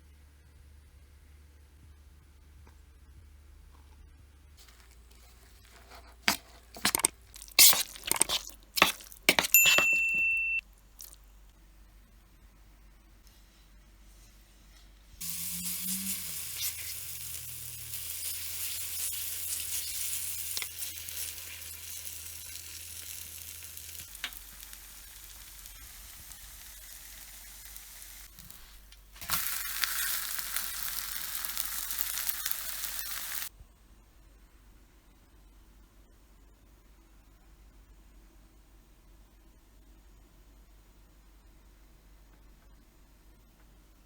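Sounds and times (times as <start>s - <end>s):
batter sizzling in oil: 6.3s - 9.8s, 15.2s - 33.5s.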